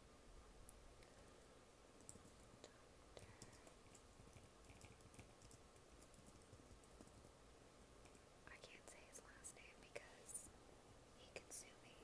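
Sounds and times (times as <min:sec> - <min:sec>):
computer keyboard typing: 0:02.0 - 0:02.6, 0:03.2 - 0:07.4, 0:08.0 - 0:08.2.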